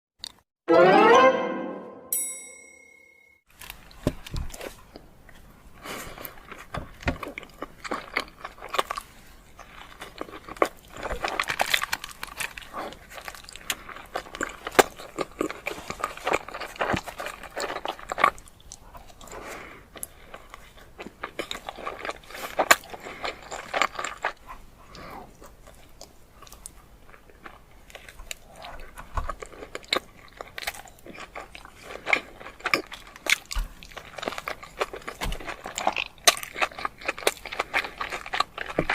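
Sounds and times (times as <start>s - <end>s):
biting and chewing: 3.6s - 38.9s.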